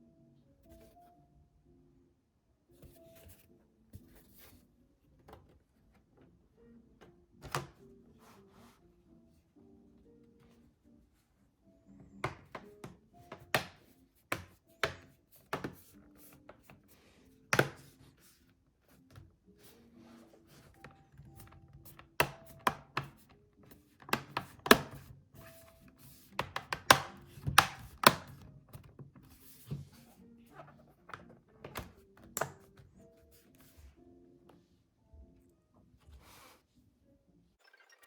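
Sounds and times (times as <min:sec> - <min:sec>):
soft background music: 0:00.0 - 0:38.0
laptop parts clicking and knocking: 0:24.0 - 0:25.1, 0:26.3 - 0:29.2.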